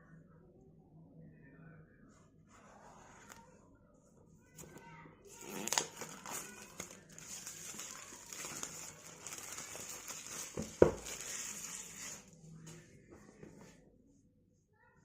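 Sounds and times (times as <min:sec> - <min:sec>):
packaging crinkling and rustling: 0:05.3 - 0:12.4.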